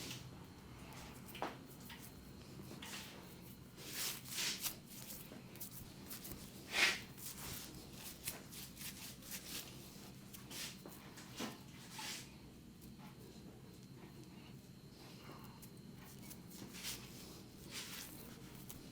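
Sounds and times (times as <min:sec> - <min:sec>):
hands rubbing skin and hair: 0:02.8 - 0:11.0, 0:16.2 - 0:18.9.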